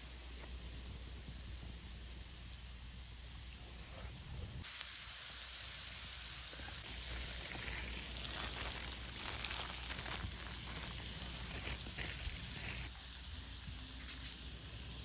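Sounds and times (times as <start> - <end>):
wood fire crackles and pops: 4.2 - 15.0
food sizzling on a griddle: 4.6 - 15.0.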